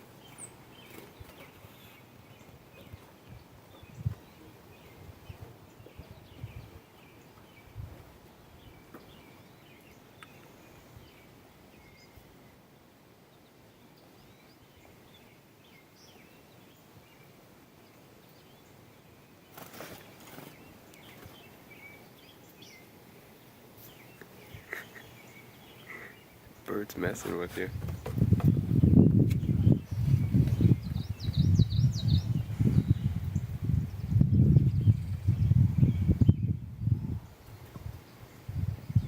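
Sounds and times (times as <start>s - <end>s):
faint bird chirps: 8.6s - 12.7s, 23.8s - 28.0s.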